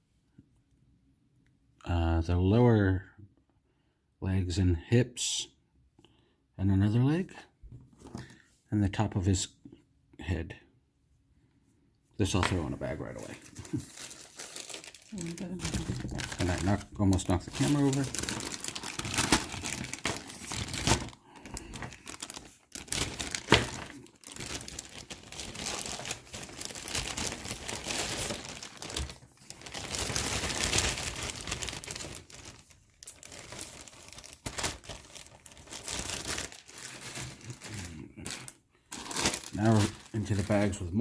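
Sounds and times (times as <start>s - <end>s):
plastic bags crinkling: 12.3s - 41.0s.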